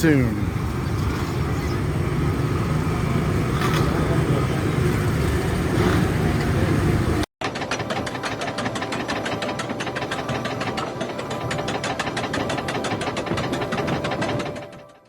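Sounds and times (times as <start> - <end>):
low mechanical rumble: 0.0 - 7.2
rapid mechanical pulsing: 0.0 - 15.0.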